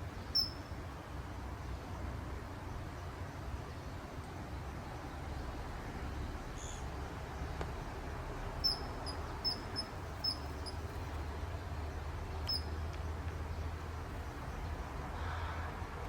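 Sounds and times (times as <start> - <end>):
bird calling high piercing notes: 8.6 - 10.8.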